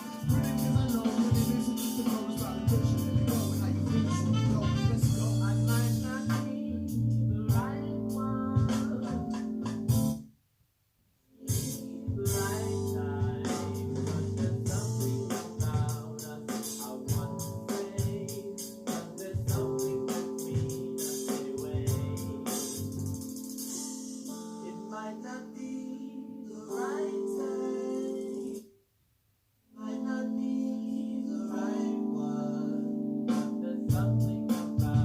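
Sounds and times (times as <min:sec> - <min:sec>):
guitar music with drum beat: 0:00.0 - 0:04.1, 0:11.5 - 0:12.7
music with singing from speaker: 0:00.0 - 0:10.2, 0:11.4 - 0:28.6, 0:29.7 - 0:35.0.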